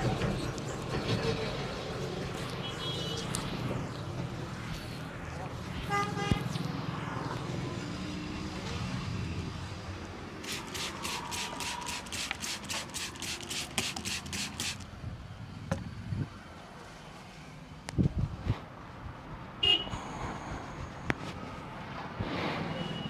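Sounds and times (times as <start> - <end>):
low traffic rumble: 0.0 - 22.8
hands rubbing hair and scalp: 2.2 - 3.8, 10.4 - 14.8.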